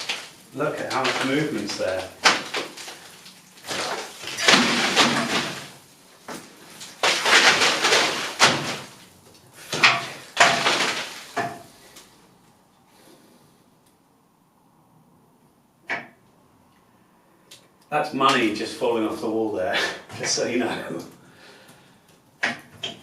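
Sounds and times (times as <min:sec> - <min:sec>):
plaster chunks crumbling and clattering: 0:00.0 - 0:12.0.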